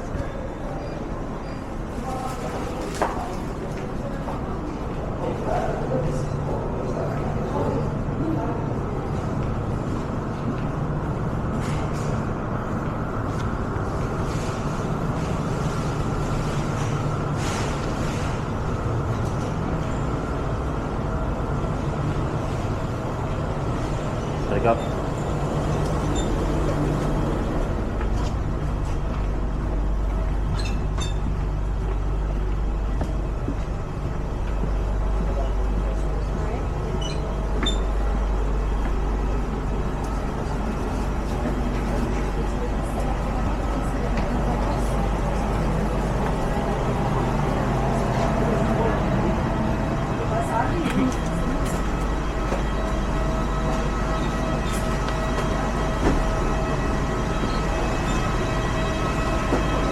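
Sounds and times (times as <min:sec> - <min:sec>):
low engine rumble: 0:02.1 - 0:59.9.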